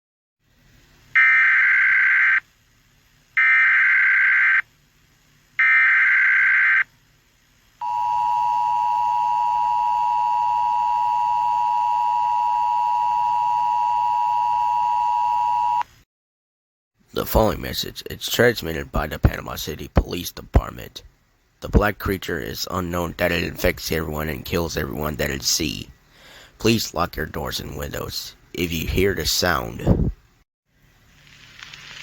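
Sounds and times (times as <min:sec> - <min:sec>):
data tone bursts: 0:07.8 - 0:15.8
steady dual tone alert signal: 0:07.8 - 0:15.8.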